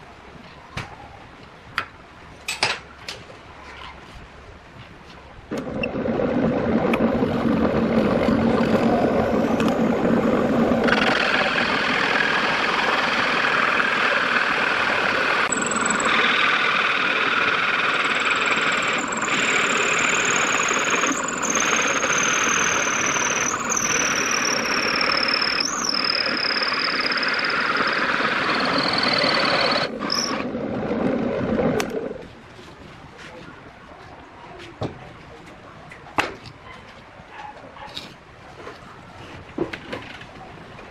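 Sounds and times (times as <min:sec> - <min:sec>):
electric drill running: 0:07.6 - 0:30.4.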